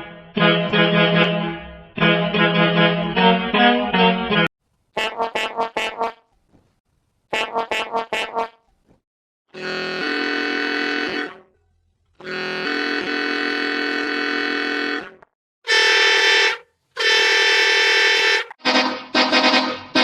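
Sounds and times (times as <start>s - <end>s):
bus horn blasts: 0.4s - 1.4s, 9.5s - 11.5s, 12.2s - 20.0s.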